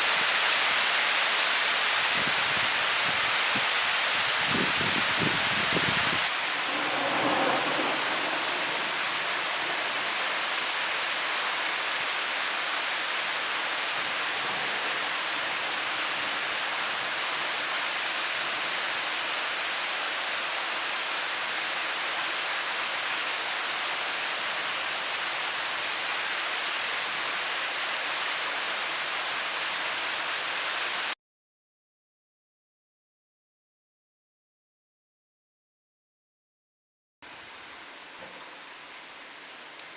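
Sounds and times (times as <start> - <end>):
heavy rain pouring: 0.0 - 31.2, 37.2 - 39.9.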